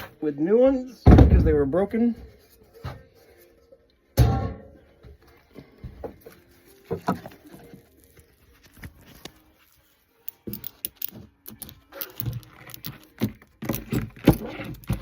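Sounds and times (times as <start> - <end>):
metal parts clinking and rattling: 10.2 - 15.0.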